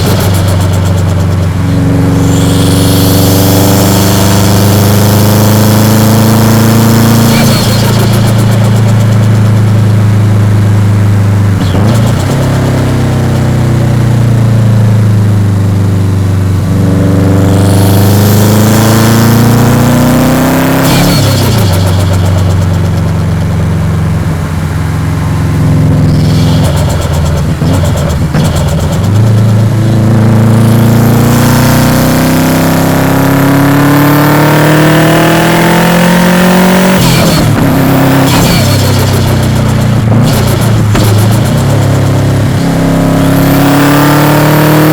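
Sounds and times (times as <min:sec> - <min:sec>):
turbo hiss and flutter: 0:00.0 - 0:04.8
car engine revving through gears: 0:00.0 - 0:44.9.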